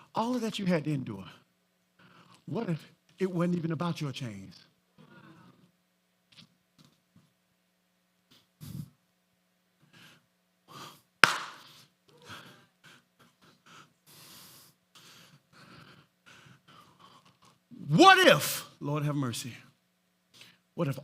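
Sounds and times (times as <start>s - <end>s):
sharp knock: 11.2s - 11.6s
breaths close to microphone: 20.3s - 20.7s.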